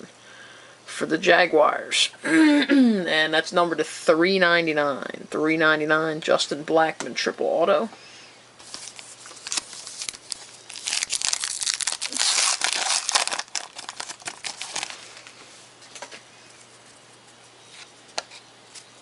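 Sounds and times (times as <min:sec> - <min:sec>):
foil wrapper tearing and crumpling: 0:08.6 - 0:15.4.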